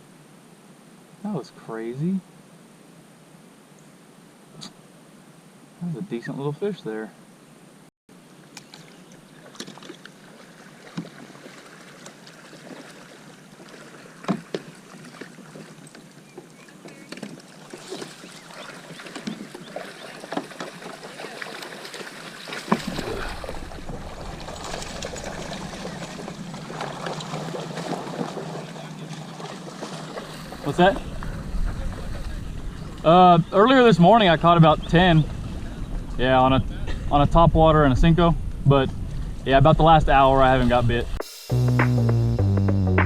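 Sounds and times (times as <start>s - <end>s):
water lapping against kayak: 8.6s - 33.1s, 35.0s - 36.2s
wind rumble on microphone: 30.4s - 33.6s, 34.8s - 41.2s.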